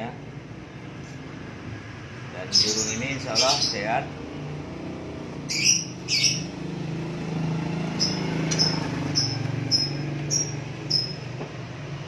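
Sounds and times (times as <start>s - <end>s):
small bird chirping: 2.4s - 4.0s, 5.4s - 11.4s.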